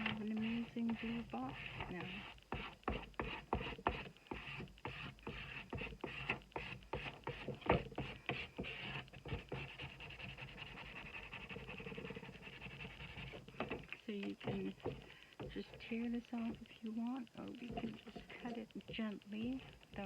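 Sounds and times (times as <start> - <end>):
taps and knocks on cardboard: 0.0 - 16.7.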